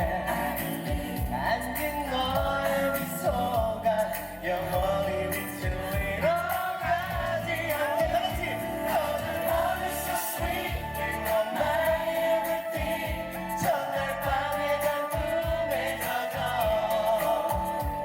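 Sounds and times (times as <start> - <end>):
crowd singing along: 0.0 - 18.0
live band playing pop ballad: 0.0 - 18.0
kick drum beat: 0.9 - 1.5, 2.4 - 2.6, 3.3 - 3.8, 5.6 - 6.2, 7.1 - 7.4, 8.0 - 8.6, 10.4 - 10.9, 12.8 - 13.3, 14.2 - 14.5, 15.2 - 15.7, 16.6 - 16.9, 17.5 - 18.0.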